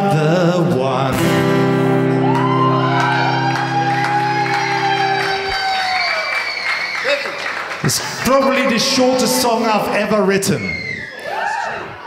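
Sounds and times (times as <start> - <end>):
acoustic guitar chord ringing: 1.1 - 5.5
crowd voices and whoops: 2.0 - 8.8, 10.4 - 12.0.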